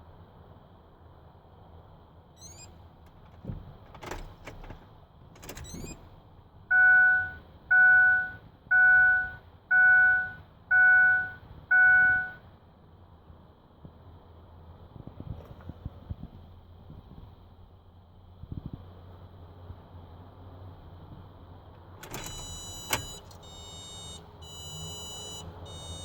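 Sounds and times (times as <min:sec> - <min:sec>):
vehicle warning chime beeping: 0:02.4 - 0:02.8, 0:05.4 - 0:06.0, 0:06.7 - 0:12.5, 0:22.0 - 0:26.0.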